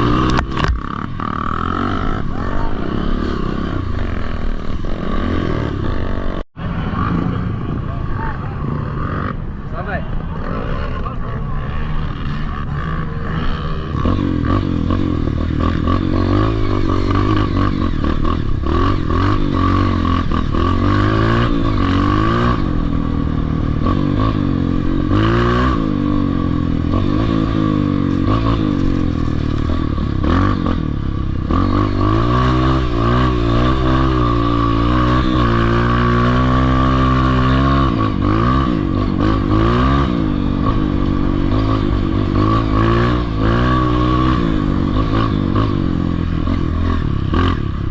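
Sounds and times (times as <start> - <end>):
dirt bike engine revving: 0.0 - 7.8, 8.5 - 47.9
bike rattling: 26.4 - 47.4.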